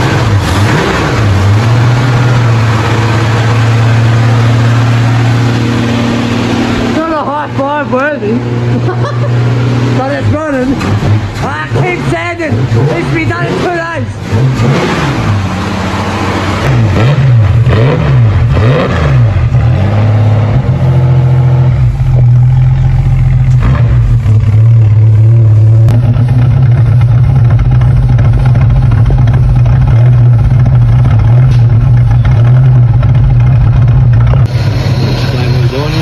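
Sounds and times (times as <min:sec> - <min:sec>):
car engine revving and running: 0:00.0 - 0:36.0.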